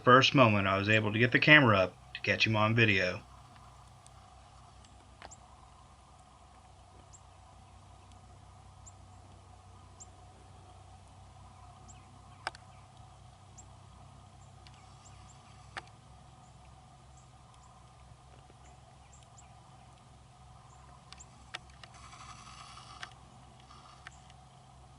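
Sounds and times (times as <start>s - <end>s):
steady low hum: 0.0s - 24.9s
sharp clicks: 20.7s - 24.6s.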